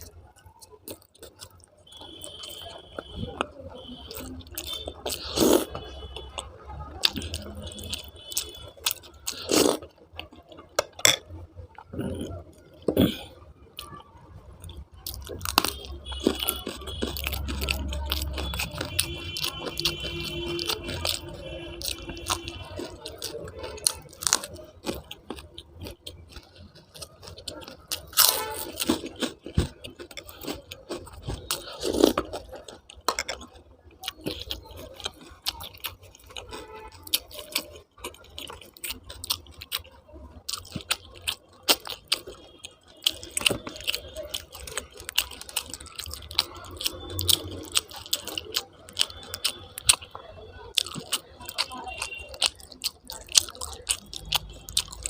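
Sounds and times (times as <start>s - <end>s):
person chewing: 0.0s - 55.0s
crunchy bites: 15.0s - 50.1s, 50.7s - 55.0s.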